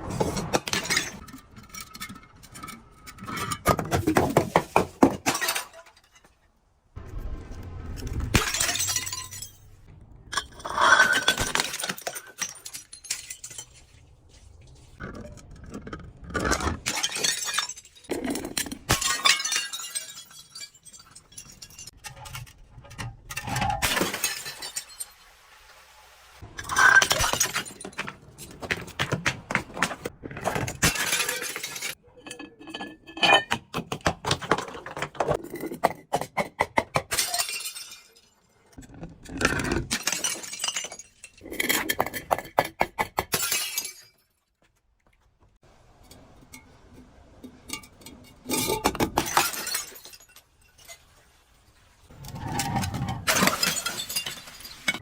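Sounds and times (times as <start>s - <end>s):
glass bottles breaking: 0.5s - 6.4s, 8.3s - 14.1s, 16.4s - 22.4s, 23.3s - 25.2s, 26.4s - 29.2s, 29.8s - 44.5s, 47.7s - 51.1s, 52.2s - 55.0s
glass shards crunching and clinking: 8.4s - 14.2s, 16.4s - 22.5s, 23.3s - 25.2s, 26.6s - 28.8s, 30.4s - 33.6s, 37.1s - 38.9s, 39.5s - 42.6s, 47.7s - 51.1s, 52.3s - 55.0s.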